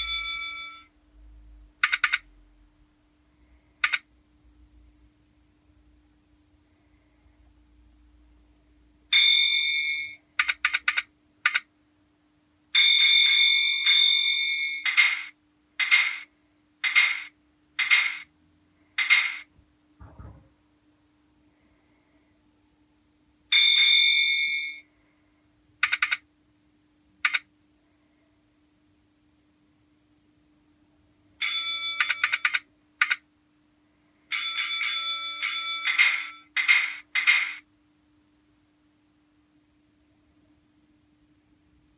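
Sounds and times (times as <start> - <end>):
block bell ringing: 0.0 - 0.9
signal box bell ringing: 0.0 - 0.9, 9.1 - 10.2, 12.8 - 14.9, 23.5 - 24.9, 31.4 - 32.4, 34.3 - 36.6
faint steady hum: 0.0 - 41.9
low thump: 20.0 - 20.6.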